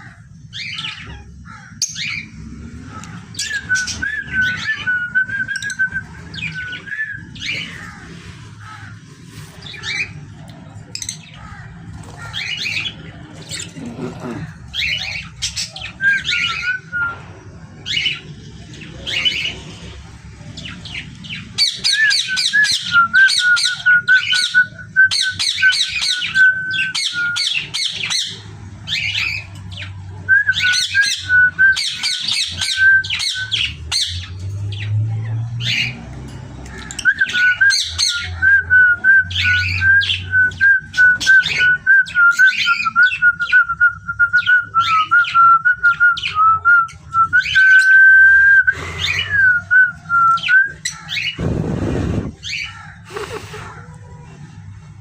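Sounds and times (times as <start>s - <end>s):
parrots squawking: 0.0s - 5.0s, 5.6s - 10.3s, 11.0s - 16.8s, 50.4s - 53.9s.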